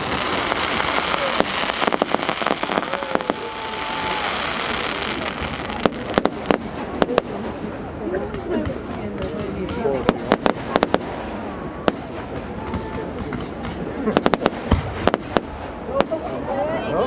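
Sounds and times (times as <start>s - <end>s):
fireworks bangs: 0.0s - 16.5s
crackling fireworks: 0.0s - 16.8s.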